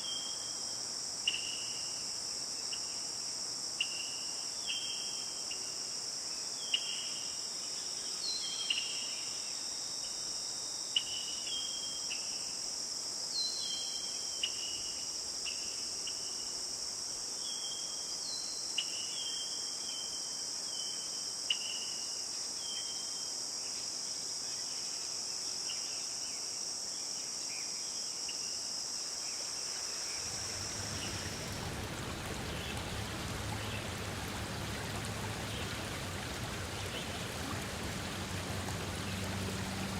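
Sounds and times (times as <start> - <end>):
insect chorus: 0.0 - 39.9
running water: 29.7 - 39.9.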